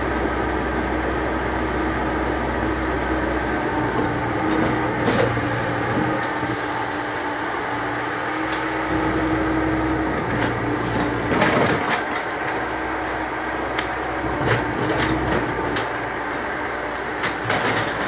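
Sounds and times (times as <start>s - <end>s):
excavator diesel engine running: 0.0s - 18.0s.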